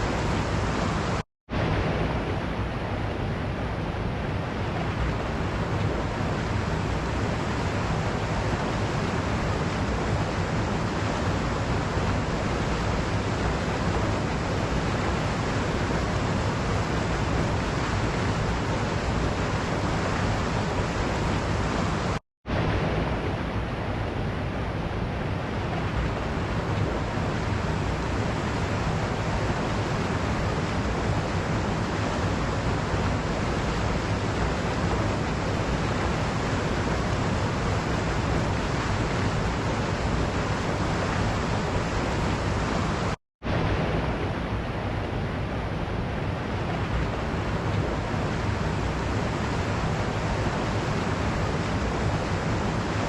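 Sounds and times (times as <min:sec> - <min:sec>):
waterfall rushing: 0:00.0 - 0:02.4, 0:25.9 - 0:53.0.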